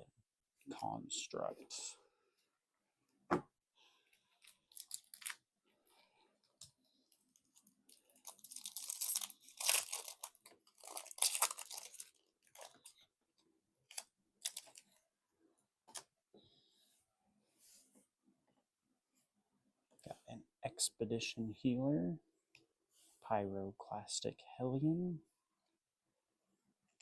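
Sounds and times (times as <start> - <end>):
foil wrapper tearing and crinkling: 4.4 - 5.4, 7.6 - 12.8, 13.9 - 14.8.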